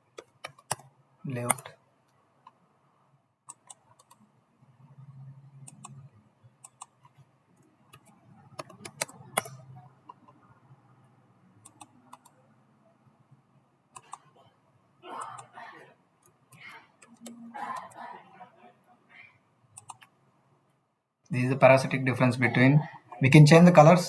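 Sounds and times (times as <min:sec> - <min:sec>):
faint low hum: 0:00.0 - 0:24.0
keyboard and mouse clicks: 0:00.1 - 0:01.7, 0:03.5 - 0:04.3, 0:05.6 - 0:10.5, 0:11.6 - 0:12.4, 0:13.9 - 0:14.4, 0:16.2 - 0:17.9, 0:19.8 - 0:20.2.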